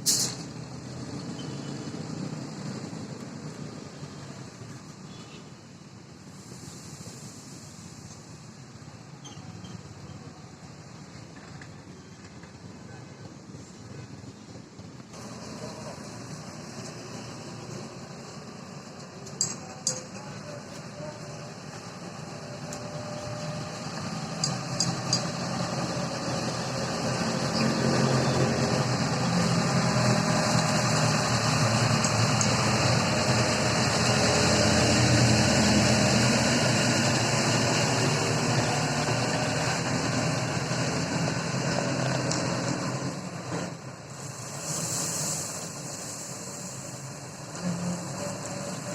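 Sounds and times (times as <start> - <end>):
diesel engine running: 13.3 - 48.9.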